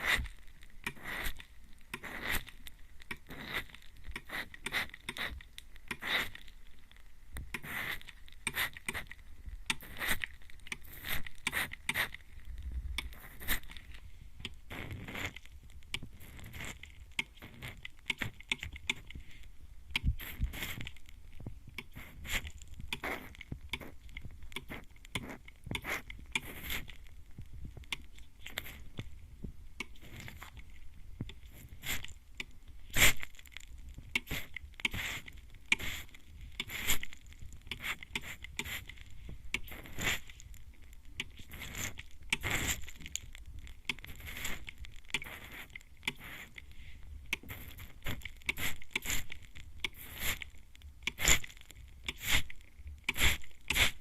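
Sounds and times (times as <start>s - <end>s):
spray bottle puffs: 0.0s - 6.4s, 7.5s - 9.1s, 13.1s - 13.8s, 14.7s - 15.4s, 20.0s - 20.9s, 21.8s - 23.9s, 24.6s - 26.9s, 31.5s - 32.1s, 34.2s - 37.1s, 39.5s - 40.3s, 41.4s - 42.9s, 50.0s - 50.4s, 51.1s - 51.5s, 52.1s - 52.5s, 53.1s - 54.0s.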